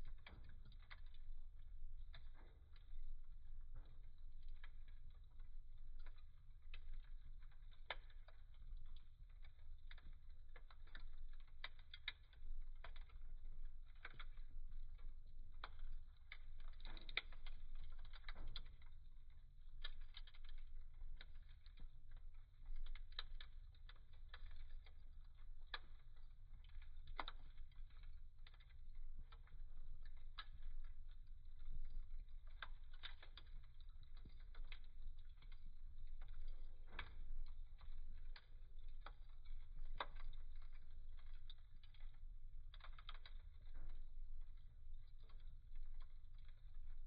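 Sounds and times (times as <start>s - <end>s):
firewood crackling and popping: 0.0s - 47.0s
low fire hum: 0.0s - 47.0s.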